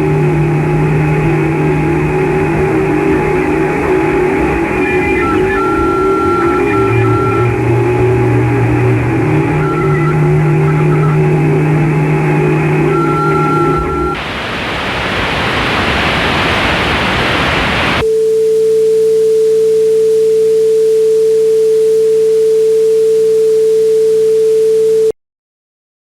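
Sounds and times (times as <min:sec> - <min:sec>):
television static: 0:00.0 - 0:18.0
steady test tone: 0:00.0 - 0:24.5
faint hum: 0:00.0 - 0:25.1.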